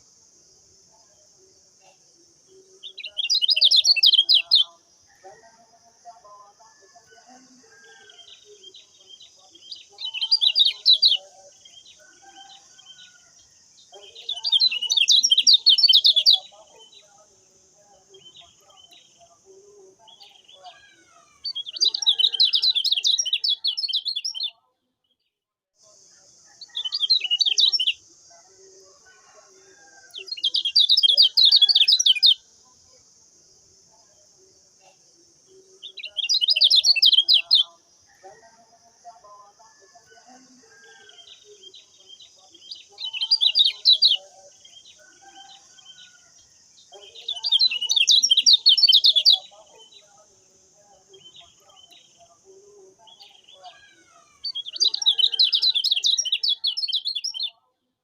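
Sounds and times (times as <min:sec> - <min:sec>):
songbird chattering song: 0:00.0 - 0:57.8
bird chirps: 0:01.8 - 0:06.5, 0:07.3 - 0:17.3, 0:18.0 - 0:24.7, 0:26.6 - 0:28.4, 0:29.7 - 0:32.5, 0:34.8 - 0:38.4, 0:40.3 - 0:50.2, 0:53.0 - 0:57.7.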